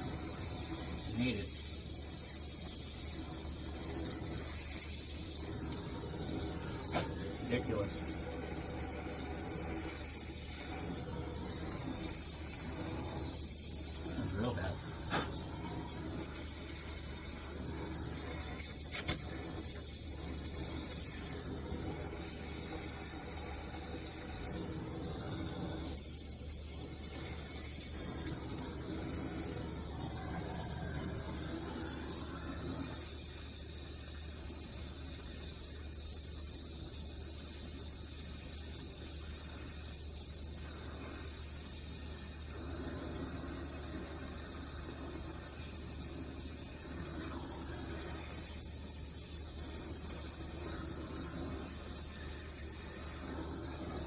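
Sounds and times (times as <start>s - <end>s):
torch flame hissing: 0.0s - 54.0s
sharp click: 18.9s - 19.3s.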